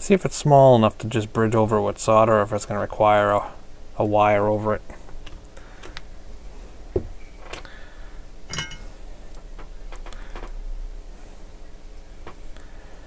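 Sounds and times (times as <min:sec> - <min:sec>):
faint low hum: 0:00.0 - 0:13.0
metallic clink: 0:08.5 - 0:08.9.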